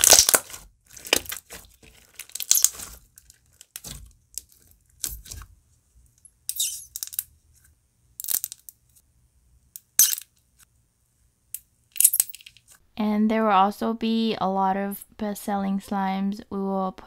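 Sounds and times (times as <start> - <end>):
slime squished by hand: 0.0 - 5.4.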